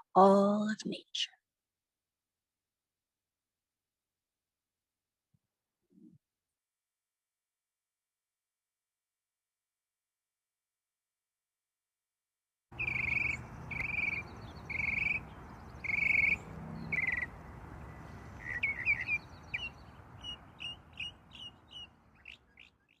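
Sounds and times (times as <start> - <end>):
birds calling and chirping: 12.8 - 23.0.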